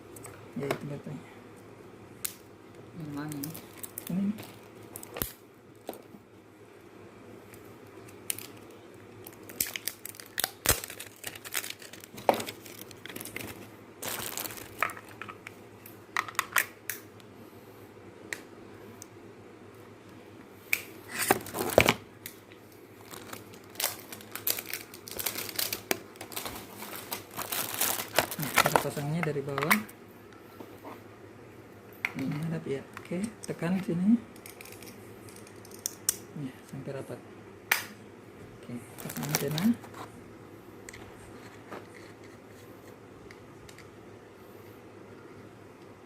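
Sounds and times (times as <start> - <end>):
plastic packaging crinkling: 3.1 - 6.1, 8.0 - 15.5, 21.1 - 22.0, 23.0 - 29.9, 39.0 - 40.0.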